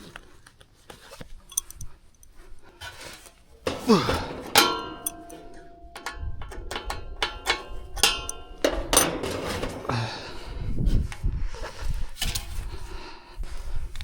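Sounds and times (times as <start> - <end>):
metallic clicks and clinks: 1.5 - 2.4, 3.9 - 9.9.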